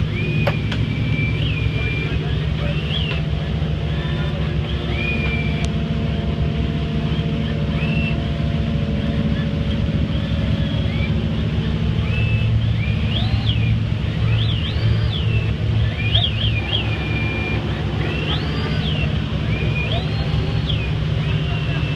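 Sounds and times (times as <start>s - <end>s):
boat engine droning: 0.0s - 21.9s
high gliding chirps: 8.8s - 21.9s.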